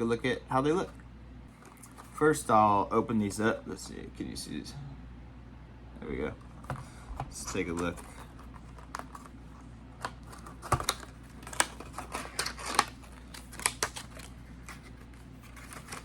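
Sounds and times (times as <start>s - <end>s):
packaging clicks and taps: 10.0s - 14.8s.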